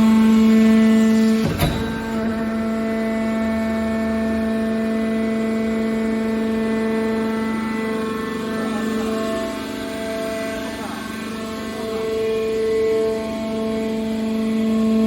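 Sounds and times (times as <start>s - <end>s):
hydraulic pump whining: 0.2s - 15.0s
sharp knock: 1.4s - 3.1s.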